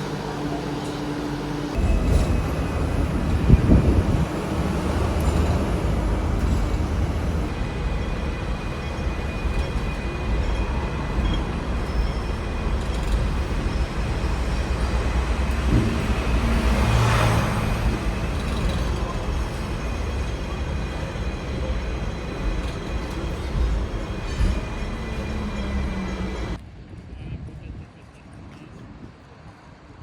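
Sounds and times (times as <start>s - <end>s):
vehicle rumble: 1.7s - 7.9s.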